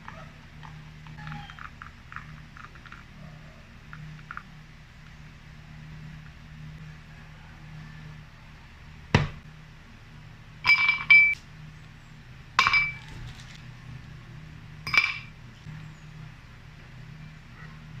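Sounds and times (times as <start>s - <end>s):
ice clinking in ringing glass: 10.6s - 11.4s, 12.6s - 13.0s, 14.9s - 15.3s.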